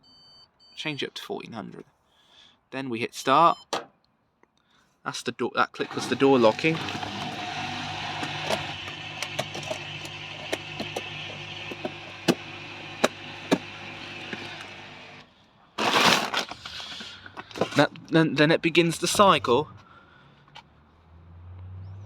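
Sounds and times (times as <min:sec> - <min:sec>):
washing machine hum: 0:05.8 - 0:15.2.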